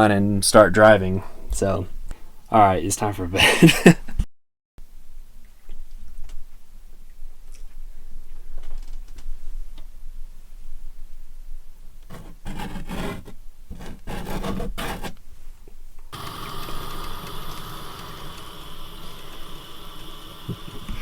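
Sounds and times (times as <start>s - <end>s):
steady hiss with faint hum: 4.8s - 12.2s, 15.0s - 21.0s
rubbing and scraping: 12.1s - 15.2s.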